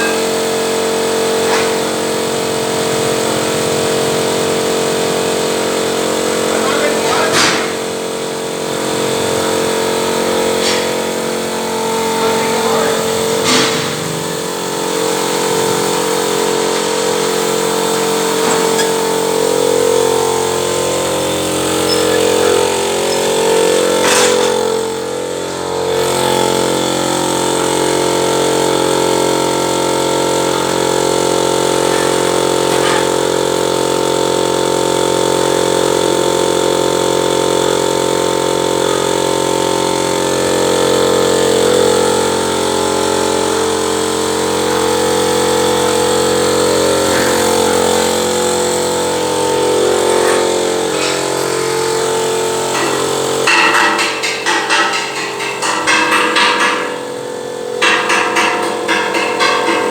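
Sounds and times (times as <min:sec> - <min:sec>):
steam boiler machinery drone: 0:00.0 - 0:59.9.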